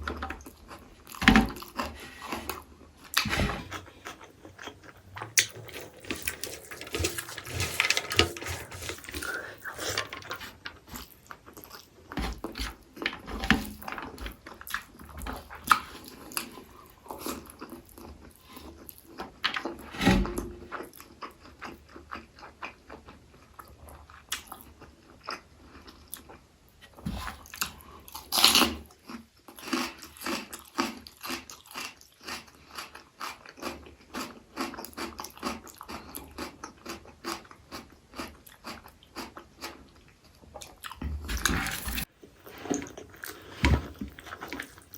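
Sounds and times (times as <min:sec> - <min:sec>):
slurping: 0:01.6 - 0:11.9.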